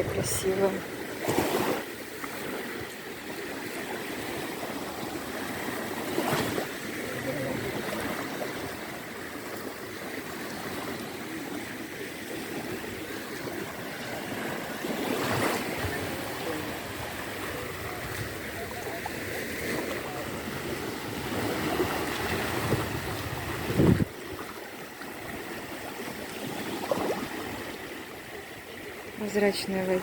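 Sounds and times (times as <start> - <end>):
small waves lapping on shore: 0.0 - 30.0.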